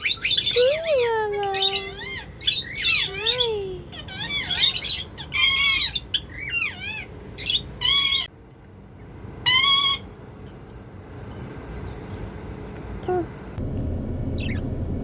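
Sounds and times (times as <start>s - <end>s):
parrots chirping and squawking: 0.0s - 8.3s, 9.4s - 10.2s, 14.3s - 14.8s.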